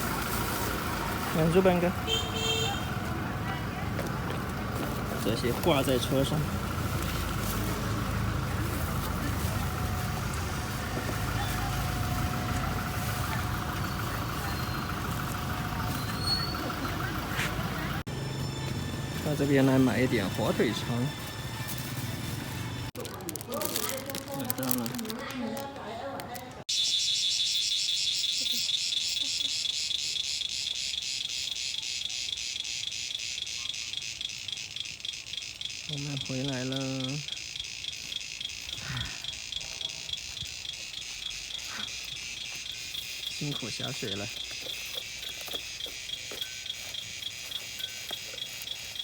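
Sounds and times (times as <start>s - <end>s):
insects chirping: 0.0s - 22.9s, 26.7s - 49.0s
vehicle engine running: 0.0s - 23.4s, 30.2s - 49.0s
street traffic: 0.0s - 49.0s.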